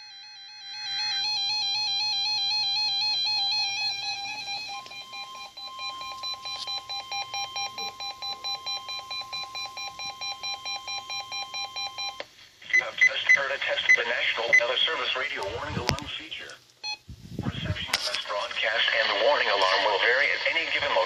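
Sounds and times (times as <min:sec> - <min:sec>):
warbling high-pitched alarm tone: 0:00.0 - 0:12.2
steady warning tone: 0:00.0 - 0:16.0.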